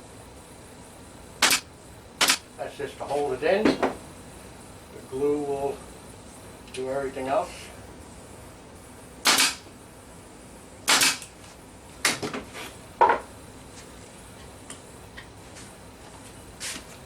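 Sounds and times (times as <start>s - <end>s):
pin nailer firing: 1.4s - 1.6s, 2.2s - 2.4s, 9.2s - 9.6s, 10.9s - 11.3s.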